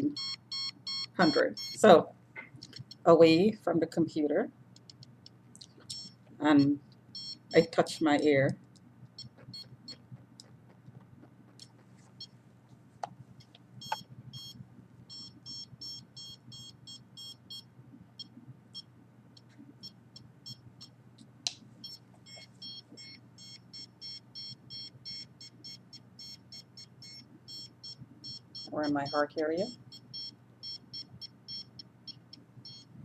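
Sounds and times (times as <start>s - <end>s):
signal meter short high beeps: 0.0s - 1.8s, 5.9s - 7.7s, 13.8s - 18.3s, 21.8s - 32.9s
steady low hum: 0.0s - 33.0s
sharp clicks: 2.4s - 3.0s, 4.8s - 6.1s.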